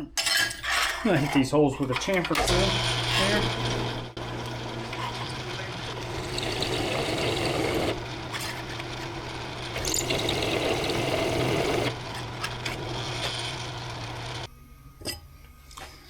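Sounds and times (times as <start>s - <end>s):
tool scraping sheet metal: 0.3s - 3.7s
steady hum: 2.5s - 16.0s.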